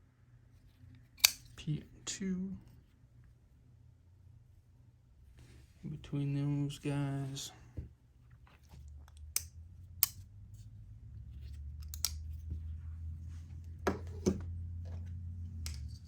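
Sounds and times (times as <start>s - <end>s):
steady low hum: 0.0s - 16.0s
knives clicking and tapping: 1.2s - 1.5s, 9.2s - 10.2s, 11.8s - 12.5s, 15.6s - 16.0s.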